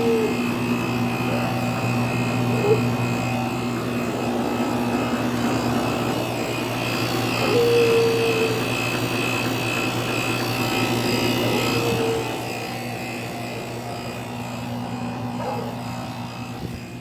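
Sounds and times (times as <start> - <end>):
compressor hum: 0.0 - 17.0
condenser fans rushing: 0.0 - 17.0.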